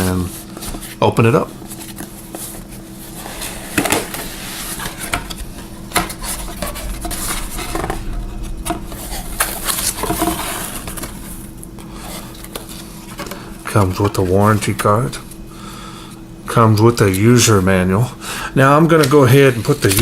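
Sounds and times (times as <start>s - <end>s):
packaging rustling: 0.0s - 15.5s.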